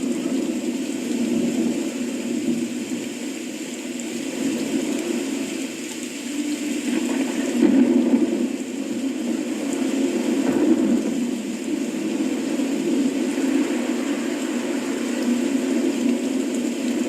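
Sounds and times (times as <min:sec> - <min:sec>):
rain: 0:00.0 - 0:17.0
thunder rumbling: 0:06.4 - 0:17.0.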